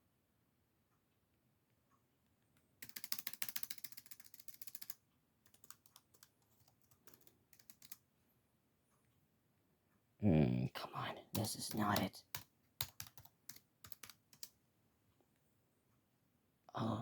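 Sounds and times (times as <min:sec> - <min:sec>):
faint keyboard typing: 0:02.2 - 0:08.2, 0:11.0 - 0:14.6.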